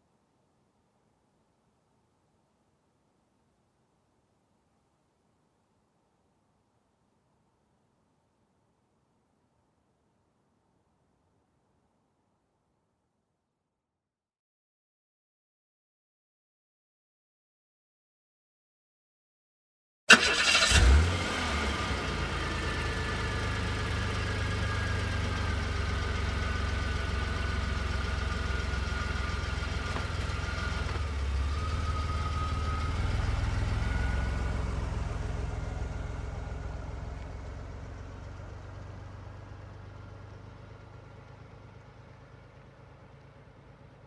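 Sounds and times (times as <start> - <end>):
car engine running: 20.6 - 44.0.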